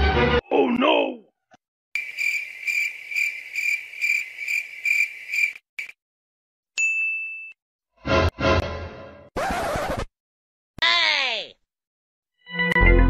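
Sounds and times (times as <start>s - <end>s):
cricket chirping: 2.0s - 6.0s.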